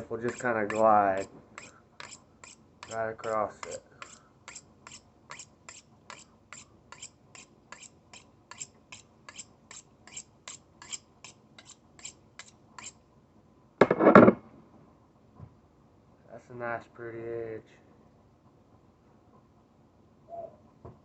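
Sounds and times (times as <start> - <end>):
knife scraping on sharpener: 0.0 - 13.0.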